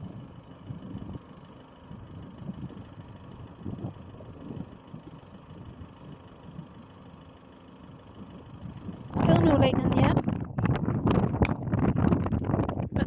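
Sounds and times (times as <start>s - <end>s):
wind buffeting microphone: 1.9s - 6.8s, 8.1s - 13.0s.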